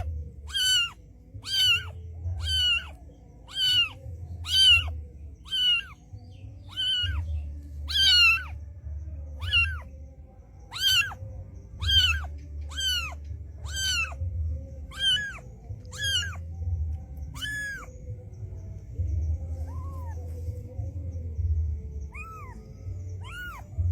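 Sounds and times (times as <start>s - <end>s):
cat mewing: 0.0s - 6.0s, 6.7s - 8.6s, 9.4s - 9.9s, 10.7s - 11.2s, 11.8s - 16.5s, 17.3s - 18.0s, 22.1s - 23.9s
low rumble: 4.0s - 23.9s.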